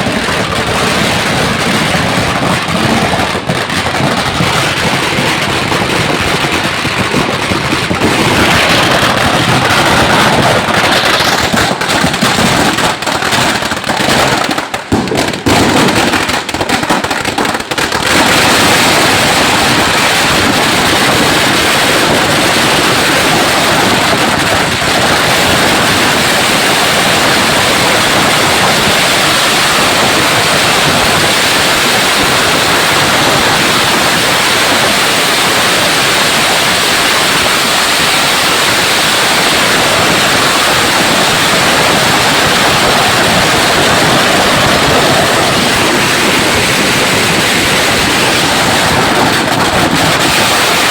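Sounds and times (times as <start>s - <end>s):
firecrackers crackling: 0.0s - 50.9s.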